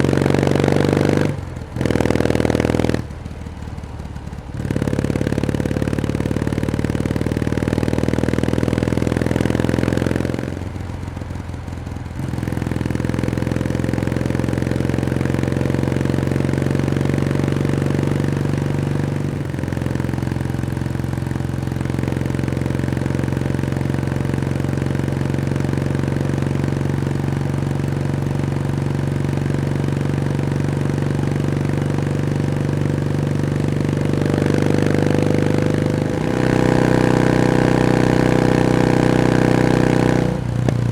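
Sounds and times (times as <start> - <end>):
motorcycle engine running: 0.0 - 40.9.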